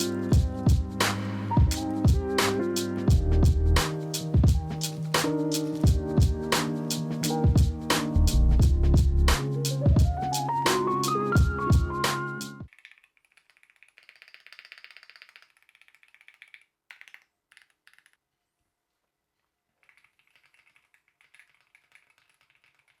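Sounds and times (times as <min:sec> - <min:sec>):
background music: 0:00.0 - 0:12.7.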